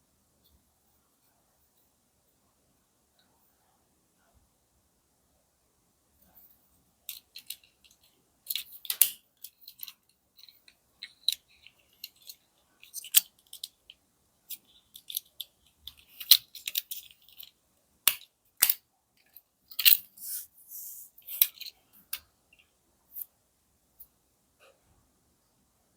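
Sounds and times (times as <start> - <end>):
small clicks and taps of toy car: 7.1 - 20.1.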